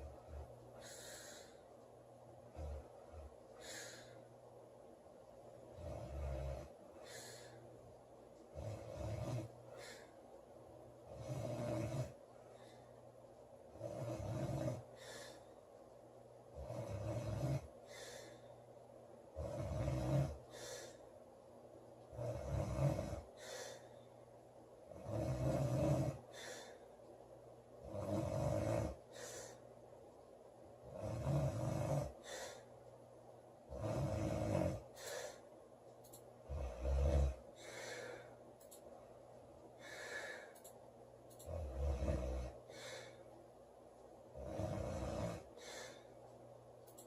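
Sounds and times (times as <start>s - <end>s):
woman snoring loudly: 5.8s - 6.8s, 8.5s - 9.5s, 11.1s - 12.2s, 13.7s - 14.9s, 16.5s - 17.7s, 19.4s - 20.6s, 22.1s - 23.3s, 24.9s - 26.2s, 27.8s - 29.0s, 30.8s - 32.4s, 33.7s - 34.9s, 36.5s - 37.8s, 41.5s - 42.9s, 44.4s - 45.8s.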